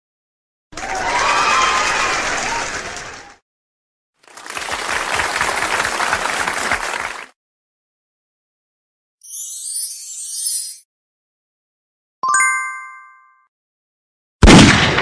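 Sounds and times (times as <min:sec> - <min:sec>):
applause: 0:00.7 - 0:03.4, 0:04.2 - 0:07.4
crowd cheering: 0:00.7 - 0:03.4, 0:04.2 - 0:07.4.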